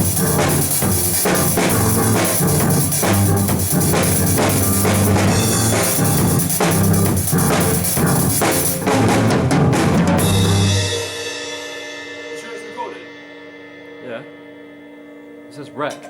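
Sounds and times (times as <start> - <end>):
low bass notes: 0.0 - 10.9
drum kit steady beat: 0.0 - 14.2.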